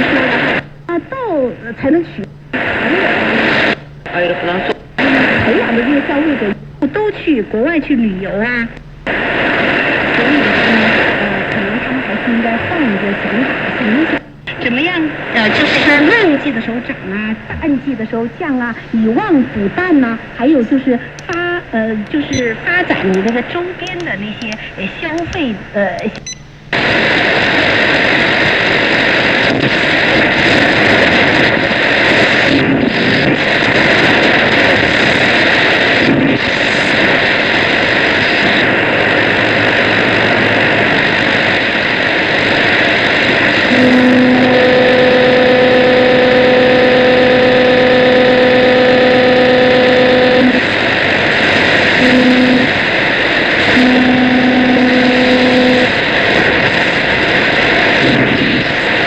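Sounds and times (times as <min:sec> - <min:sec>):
low hum with octave tone: 0:00.0 - 0:58.8
shortwave radio hiss: 0:00.0 - 0:59.0.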